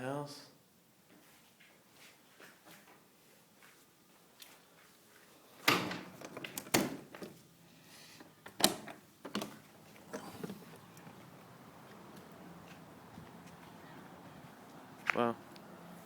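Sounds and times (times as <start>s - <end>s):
door rattling: 5.6s - 7.4s, 8.4s - 11.2s.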